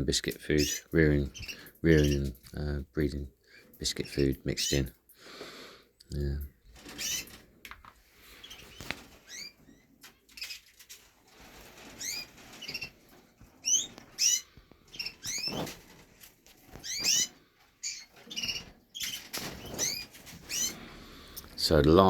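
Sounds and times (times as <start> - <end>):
canaries chirping: 0.0 - 5.4, 6.1 - 7.6, 8.2 - 22.0
wing flutter and rustling: 6.6 - 21.0.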